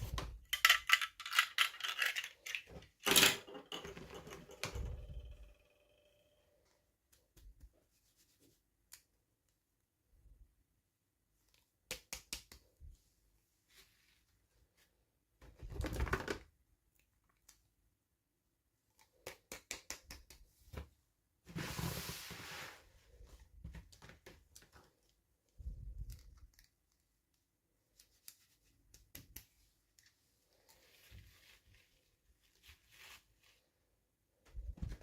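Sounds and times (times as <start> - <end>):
clicks and taps on toy packaging: 19.0 - 20.5.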